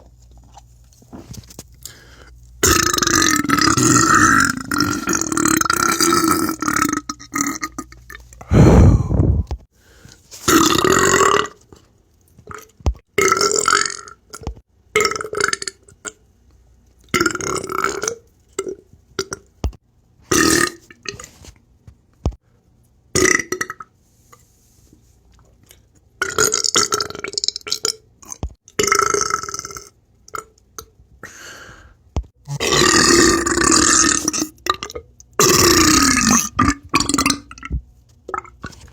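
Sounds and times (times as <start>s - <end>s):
person burping: 2.6s - 9.5s, 10.6s - 11.6s, 20.3s - 21.2s, 23.2s - 23.8s, 28.2s - 29.9s, 32.4s - 37.8s.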